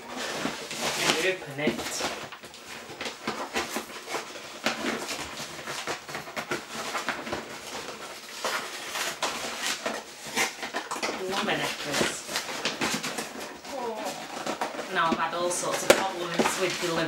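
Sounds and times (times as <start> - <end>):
packaging crackling and tearing: 0.0 - 17.0.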